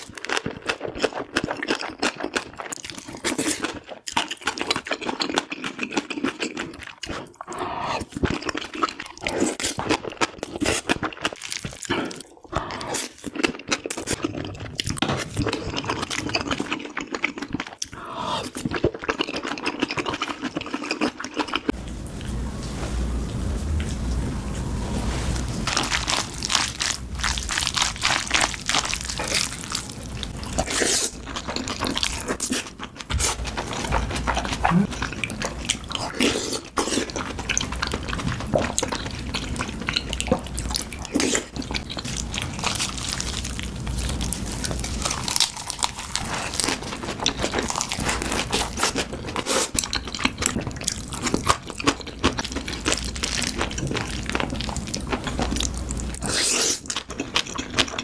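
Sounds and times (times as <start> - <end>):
wet chewing and smacking: 0.0 - 24.9, 25.6 - 58.0.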